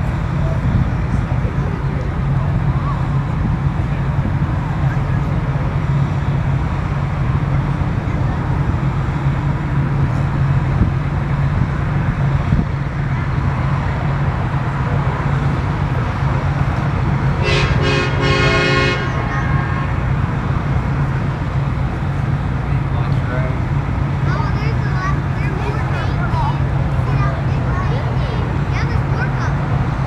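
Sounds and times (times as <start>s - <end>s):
steady low rumble: 0.0s - 30.0s
horn tooting: 17.4s - 20.1s.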